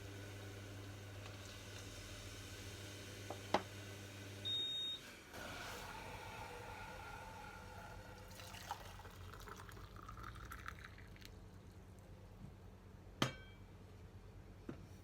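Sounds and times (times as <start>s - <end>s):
water pouring: 6.9s - 11.5s.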